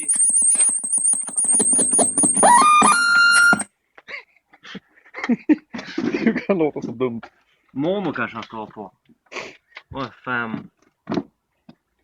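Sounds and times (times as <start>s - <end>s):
high-pitched warbling whistle: 1.4s - 3.7s
loud squeal: 1.6s - 3.7s.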